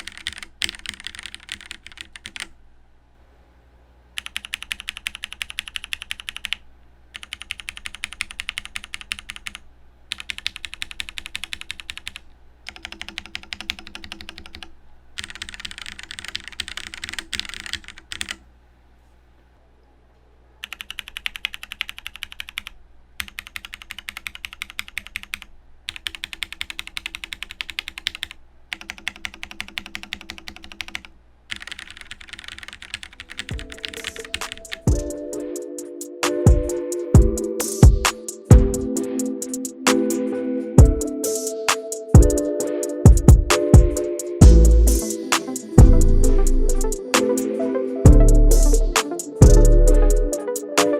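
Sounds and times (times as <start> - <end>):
fast mechanical keyboard typing: 0.0 - 2.5, 4.2 - 6.6, 7.2 - 18.4, 20.6 - 35.2.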